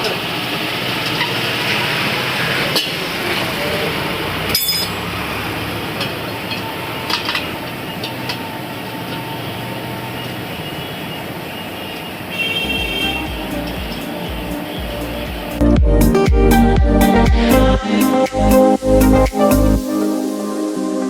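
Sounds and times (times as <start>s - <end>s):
steady background noise: 0.0s - 15.8s
metallic tool clinks: 4.5s - 5.1s.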